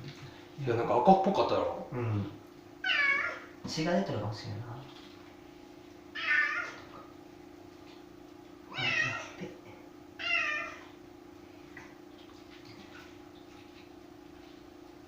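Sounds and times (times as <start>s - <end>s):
cat meowing: 2.8s - 3.5s, 6.2s - 6.9s, 8.7s - 9.4s, 10.2s - 10.9s.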